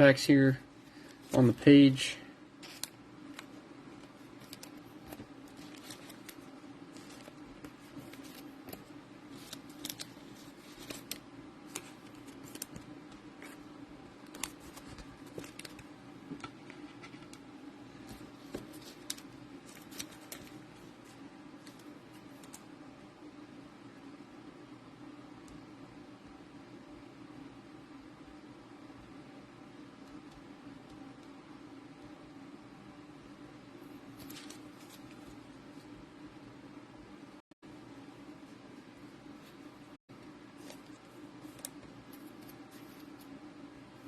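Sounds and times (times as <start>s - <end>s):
steady low hum: 0.0s - 44.0s
card pack crinkling and clicking: 2.6s - 12.9s, 14.2s - 16.6s, 18.1s - 20.6s.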